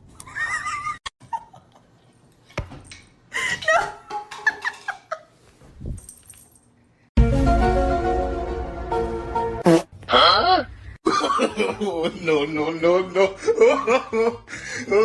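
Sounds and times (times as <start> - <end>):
music: 7.2 - 9.8.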